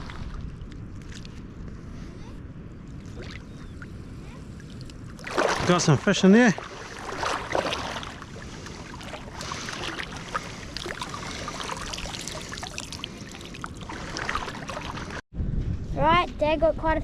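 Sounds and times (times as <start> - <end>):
water splashing and dripping: 6.6 - 15.2.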